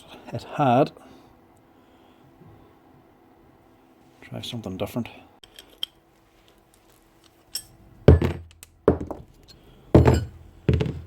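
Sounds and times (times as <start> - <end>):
heavy thunks: 8.1 - 9.3, 10.0 - 11.0.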